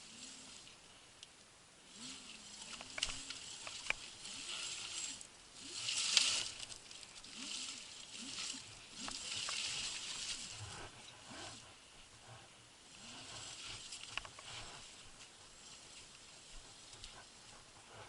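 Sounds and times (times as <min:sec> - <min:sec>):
electric scooter motor whine: 0:01.8 - 0:11.6
sharp clicks: 0:02.7 - 0:04.1.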